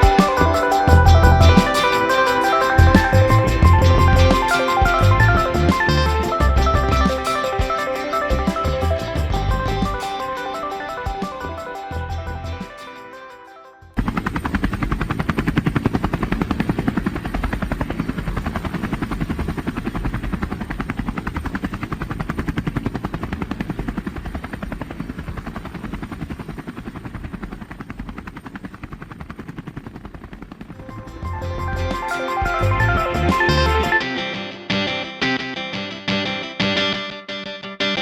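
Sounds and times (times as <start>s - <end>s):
helicopter rotor chop: 0.0s - 34.1s.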